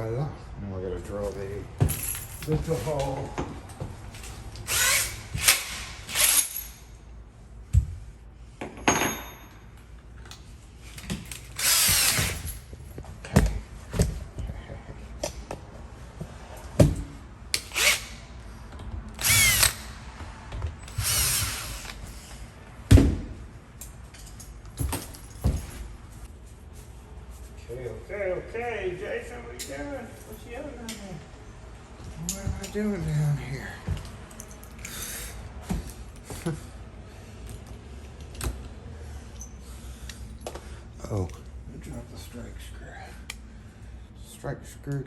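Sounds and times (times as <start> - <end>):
power drill boring into wood: 11.6 - 12.4, 19.2 - 19.9, 20.9 - 22.0.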